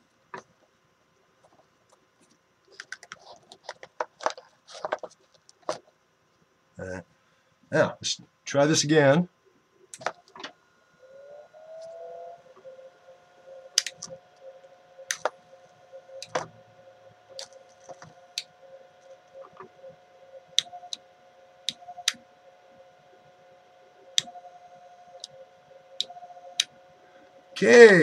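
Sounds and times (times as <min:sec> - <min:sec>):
small electric motor whining: 0:10.3 - 0:28.0
switches clicking: 0:13.7 - 0:14.4, 0:15.0 - 0:15.4, 0:20.5 - 0:21.0, 0:21.6 - 0:22.2, 0:26.0 - 0:26.8.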